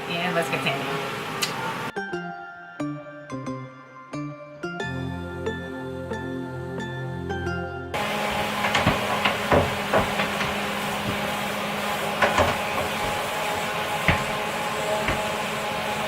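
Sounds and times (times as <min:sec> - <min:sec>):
sharp knocks and clatters: 0:08.0 - 0:16.0.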